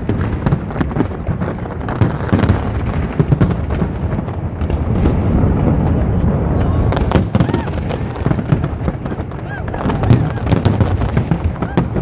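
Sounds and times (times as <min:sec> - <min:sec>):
fireworks bangs: 0:00.0 - 0:12.0
crowd voices: 0:05.6 - 0:12.0.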